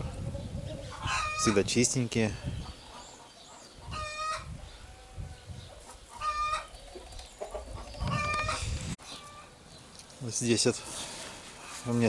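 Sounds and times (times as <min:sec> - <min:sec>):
poultry calling: 0:00.0 - 0:01.7, 0:02.5 - 0:09.6.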